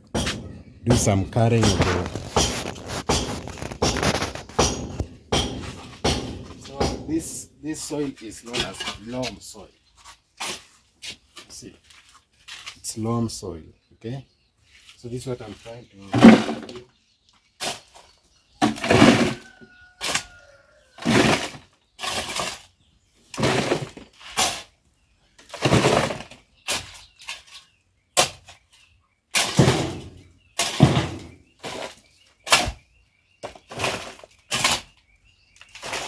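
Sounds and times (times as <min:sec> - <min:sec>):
digging tool scraping soil: 0:00.1 - 0:09.4, 0:18.7 - 0:19.4, 0:21.0 - 0:22.7, 0:23.3 - 0:24.7, 0:25.5 - 0:27.7, 0:33.6 - 0:35.0, 0:35.6 - 0:36.0.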